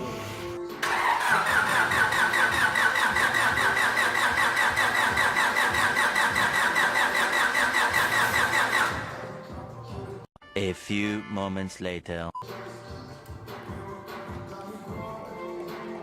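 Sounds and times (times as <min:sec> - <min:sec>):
engine cranking on starter motor: 0:00.8 - 0:09.2.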